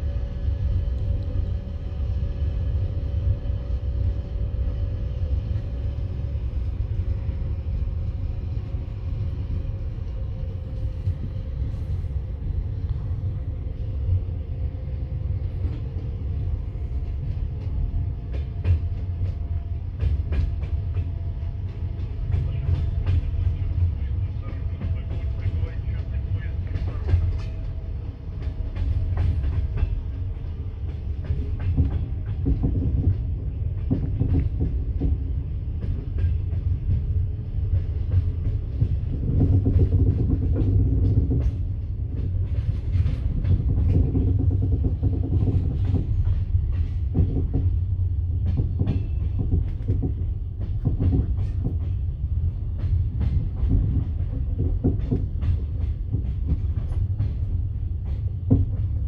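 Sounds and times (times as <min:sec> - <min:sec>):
train wheels clattering over rail joints: 0:16.7 - 0:59.0.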